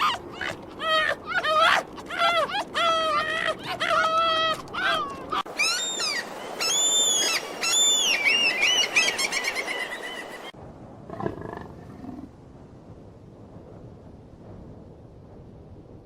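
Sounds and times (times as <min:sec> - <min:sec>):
animal high-pitched calls: 0:00.0 - 0:10.4.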